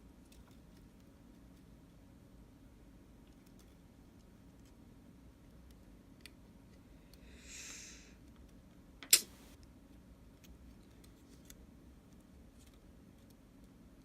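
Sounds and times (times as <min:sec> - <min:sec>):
faint ticks of tools and parts: 0:03.2 - 0:04.8
sharp click: 0:09.0 - 0:09.4.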